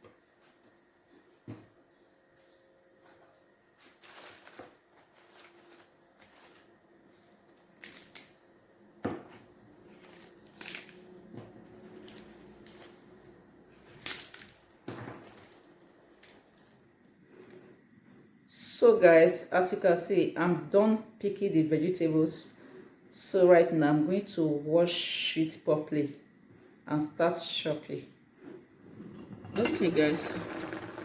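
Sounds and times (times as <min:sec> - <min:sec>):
faint steady hum: 0:00.0 - 0:31.0
leaves rustling and snapping: 0:07.8 - 0:08.4, 0:10.0 - 0:11.0, 0:13.9 - 0:14.6.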